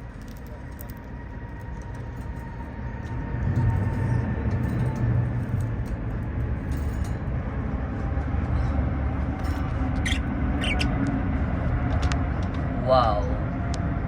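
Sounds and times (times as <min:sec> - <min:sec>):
low rumbling background noise: 0:00.0 - 0:14.0
budgie chirps: 0:10.0 - 0:11.0.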